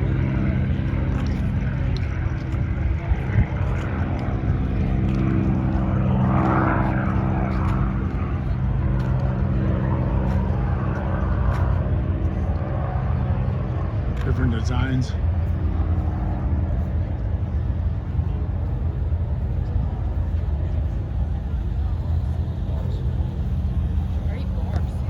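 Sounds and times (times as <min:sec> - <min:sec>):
propeller aircraft engine drone: 0:00.0 - 0:25.0.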